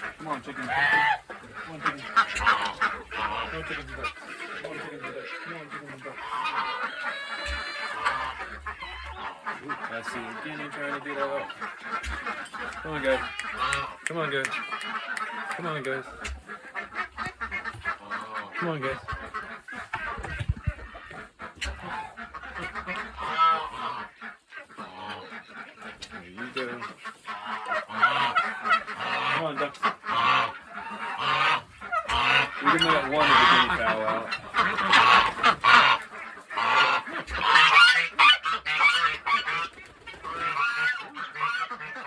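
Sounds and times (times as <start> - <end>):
ducks geese and chickens calling: 0.0 - 42.0
low thuds: 20.0 - 21.2.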